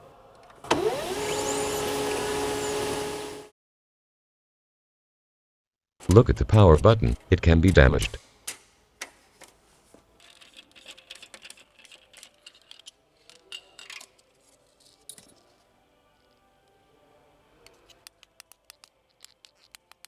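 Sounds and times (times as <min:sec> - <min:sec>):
small hard objects clicking: 0:10.2 - 0:15.5, 0:17.7 - 0:20.0.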